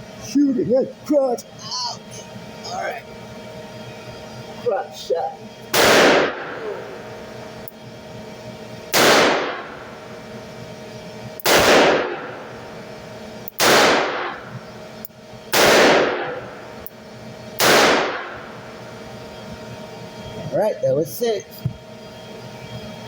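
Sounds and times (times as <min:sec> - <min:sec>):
revolver gunshots with echo: 0:05.7 - 0:06.6, 0:08.9 - 0:09.8, 0:11.4 - 0:12.4, 0:13.6 - 0:14.5, 0:15.5 - 0:16.5, 0:17.6 - 0:18.4.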